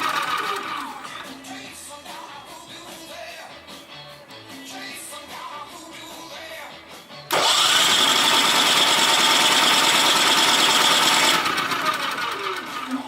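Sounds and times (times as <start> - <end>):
electric starter whine: 0.0 - 1.4, 7.3 - 13.0
generator engine running: 0.0 - 1.4, 7.3 - 13.0.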